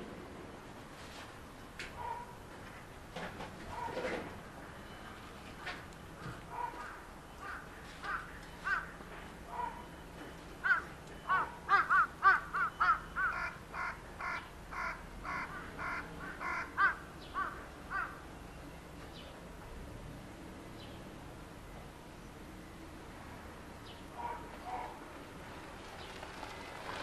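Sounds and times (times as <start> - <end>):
bird harsh repeated calls: 10.6 - 18.2.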